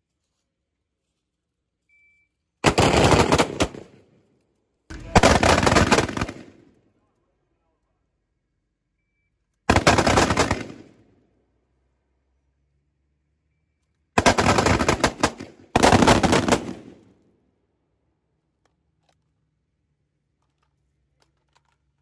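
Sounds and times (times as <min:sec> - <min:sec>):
rifles firing rapid shots: 0:02.6 - 0:04.0, 0:04.9 - 0:06.8, 0:09.7 - 0:11.0, 0:14.2 - 0:17.1.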